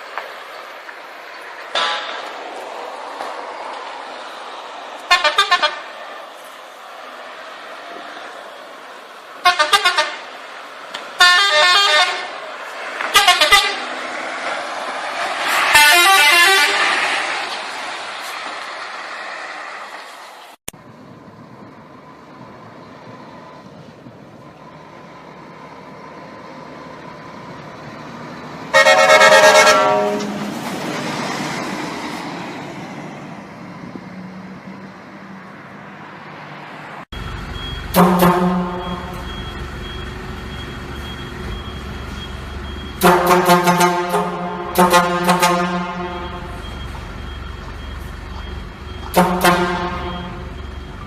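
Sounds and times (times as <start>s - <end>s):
engine and traffic noise: 0.0s - 51.0s
vehicle horns honking: 5.1s - 6.0s, 9.4s - 10.3s, 11.2s - 12.4s, 13.0s - 14.0s, 15.6s - 17.0s, 28.7s - 30.5s, 37.8s - 39.4s, 43.0s - 46.7s, 49.0s - 50.6s.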